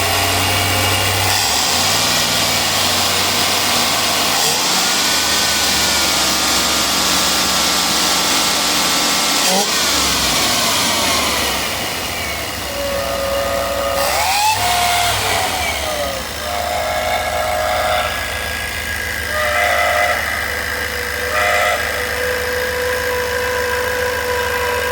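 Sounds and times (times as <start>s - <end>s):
car engine idling: 0.0s - 24.9s
wavering whistle: 12.2s - 24.9s.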